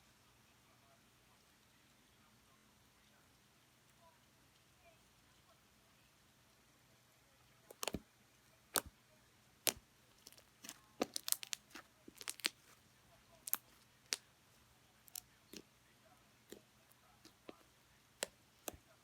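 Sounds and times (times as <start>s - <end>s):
slime squeezed by hand popping: 7.7s - 8.0s, 9.7s - 12.6s.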